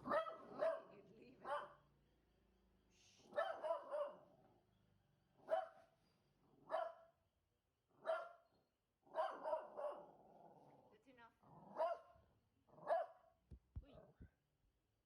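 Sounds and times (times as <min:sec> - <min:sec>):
dog barking: 0:00.0 - 0:01.8, 0:03.3 - 0:04.3, 0:05.4 - 0:05.9, 0:06.6 - 0:07.2, 0:08.0 - 0:08.5, 0:09.1 - 0:10.1, 0:11.7 - 0:12.2, 0:12.8 - 0:13.3.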